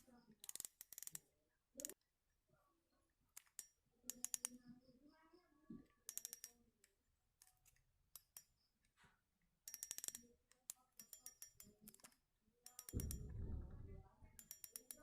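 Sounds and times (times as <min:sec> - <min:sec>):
fishing reel clicking: 0:00.4 - 0:01.2, 0:06.1 - 0:06.5, 0:09.7 - 0:10.3, 0:12.7 - 0:13.3
low handling rumble: 0:13.0 - 0:14.4.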